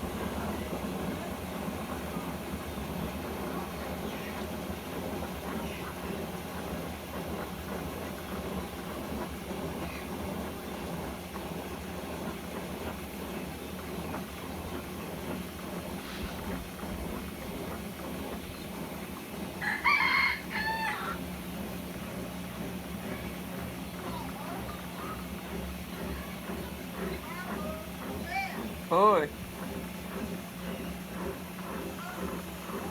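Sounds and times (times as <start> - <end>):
washing machine spinning: 0.0 - 32.9
rooster crowing: 19.6 - 21.2.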